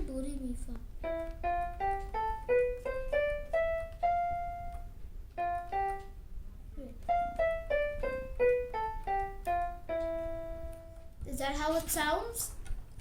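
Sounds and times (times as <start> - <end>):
electronic keyboard playing scale: 1.0 - 11.2.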